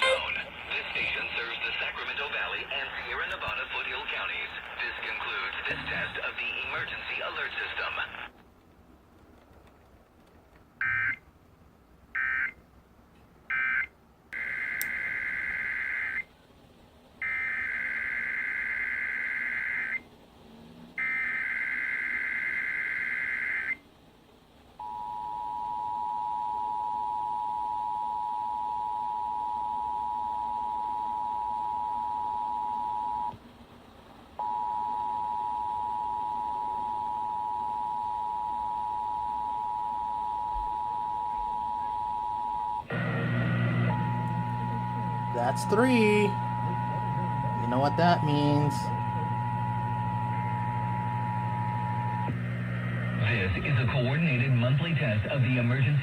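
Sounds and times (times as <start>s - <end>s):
two-tone attention signal: 0.0s - 0.3s
warbling data bursts: 43.9s - 52.3s.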